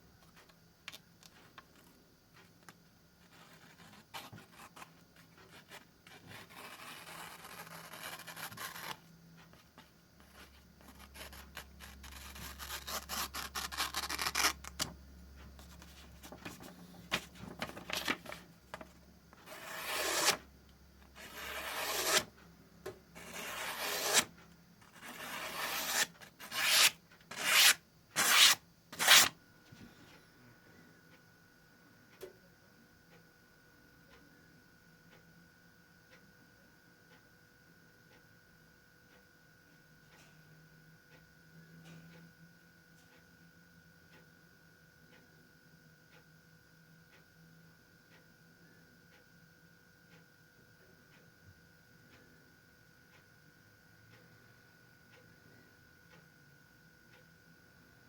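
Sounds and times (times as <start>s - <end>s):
knife slicing paper: 19.5s - 20.4s, 21.2s - 22.3s, 23.2s - 24.3s, 25.0s - 29.3s.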